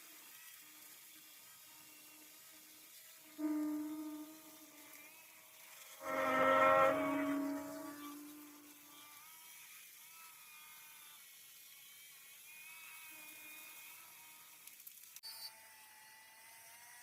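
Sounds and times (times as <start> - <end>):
faint wavering machine whine: 0.1 - 11.1.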